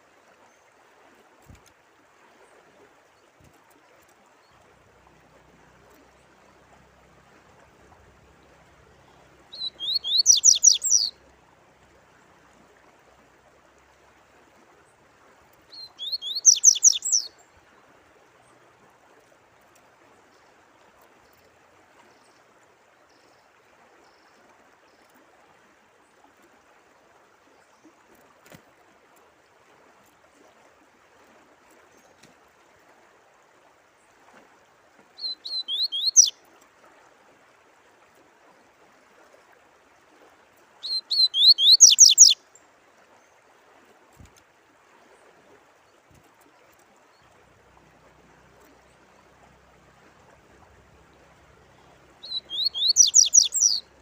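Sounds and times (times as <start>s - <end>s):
running water: 0.0s - 54.0s
songbird chattering: 9.5s - 11.1s, 15.8s - 17.3s, 35.2s - 36.3s, 40.9s - 42.4s, 52.2s - 53.8s.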